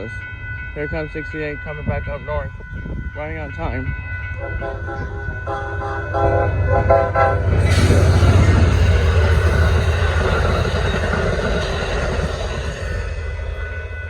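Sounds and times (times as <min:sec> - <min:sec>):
passing train rushing noise: 0:00.0 - 0:14.0
locomotive horn blasts: 0:02.1 - 0:08.5.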